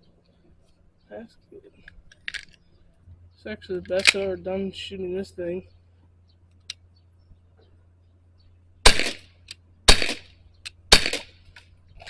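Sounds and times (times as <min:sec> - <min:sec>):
bb pistol shots: 0:08.8 - 0:11.5.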